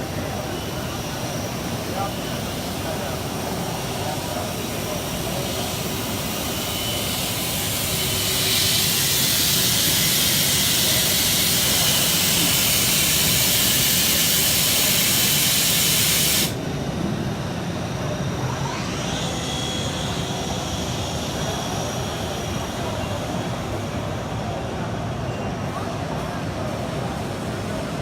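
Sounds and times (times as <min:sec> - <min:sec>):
loud steady hiss: 0:00.0 - 0:16.9.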